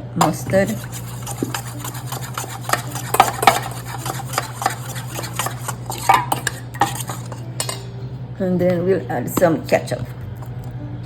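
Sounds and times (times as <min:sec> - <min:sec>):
steady low hum: 0:00.0 - 0:11.0
spoon scraping a bowl: 0:00.2 - 0:07.9.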